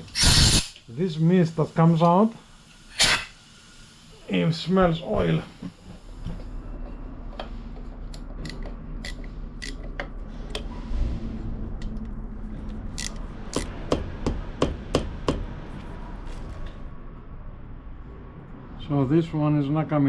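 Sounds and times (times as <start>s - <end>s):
spray can hissing: 0.1s - 0.8s
hand tools clicking on metal: 8.1s - 10.0s, 13.0s - 13.7s.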